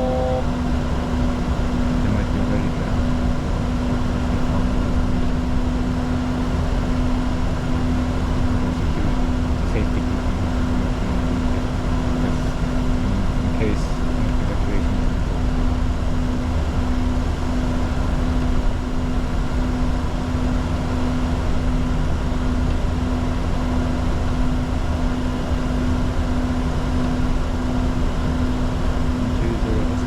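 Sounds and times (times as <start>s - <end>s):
jet cockpit rushing noise: 0.0s - 19.8s, 28.3s - 30.0s
steady hum: 0.0s - 30.0s.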